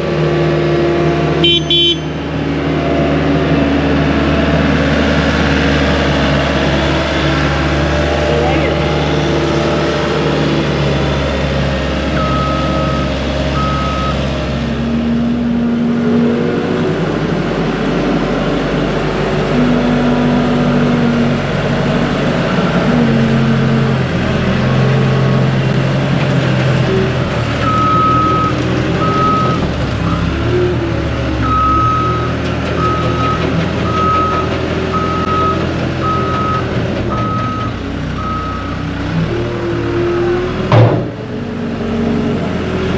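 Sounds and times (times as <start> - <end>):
skid steer engine running: 0.0 - 42.9
reversing alarm beeping: 12.2 - 14.3, 27.6 - 30.4, 31.4 - 32.2, 32.8 - 38.8.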